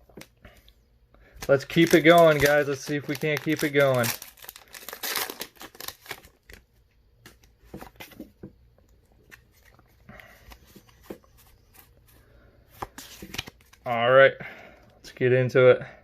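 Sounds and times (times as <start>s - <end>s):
card pack rustling: 1.4s - 8.3s, 9.2s - 13.9s.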